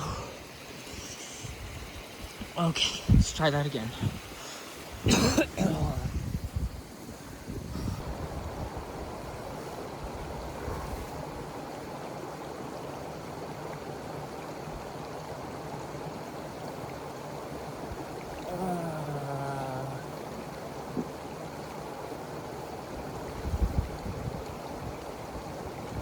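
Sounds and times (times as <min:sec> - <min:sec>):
flowing water rushing: 0:00.0 - 0:26.0
man groaning: 0:18.4 - 0:20.2.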